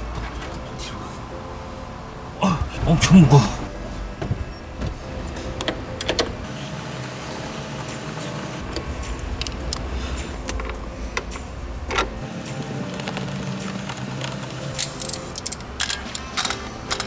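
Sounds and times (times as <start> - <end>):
clicks and knocks of car parts: 3.8 - 6.5.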